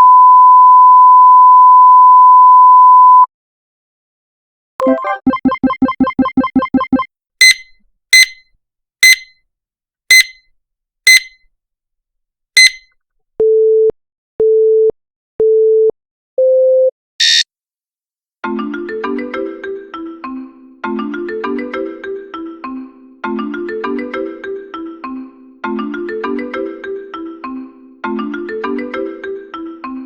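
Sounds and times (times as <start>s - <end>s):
marimba ringtone melody: 4.8s - 7.1s
bright electronic pings: 4.8s - 7.6s
countdown beeps: 4.8s - 8.4s, 9.0s - 9.3s, 10.1s - 10.4s, 11.1s - 11.4s.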